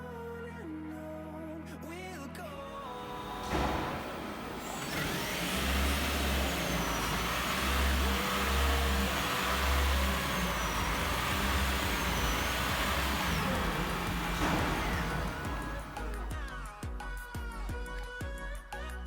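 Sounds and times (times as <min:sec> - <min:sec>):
car engine and road noise: 0:02.7 - 0:16.4.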